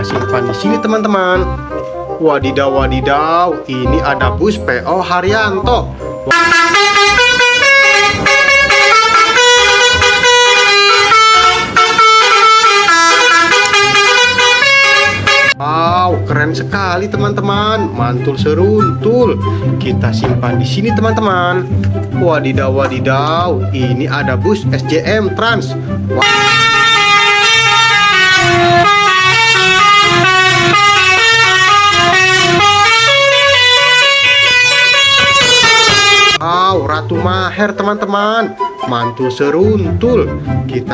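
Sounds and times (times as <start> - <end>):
multi-tone bus horn tune: 6.3 - 15.6, 26.2 - 36.4.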